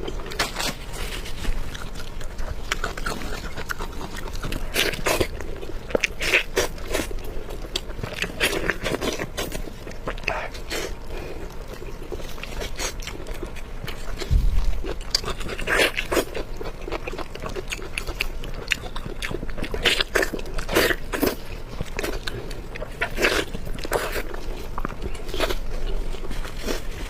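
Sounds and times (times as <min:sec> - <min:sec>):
person chewing food: 0:00.0 - 0:27.0
low thump: 0:14.3 - 0:14.7.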